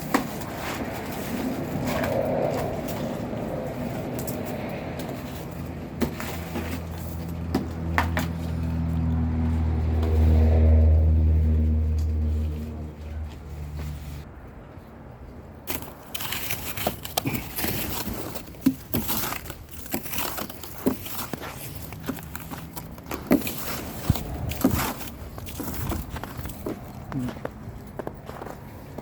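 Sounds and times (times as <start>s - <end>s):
footsteps crunching through snow: 15.7s - 29.0s.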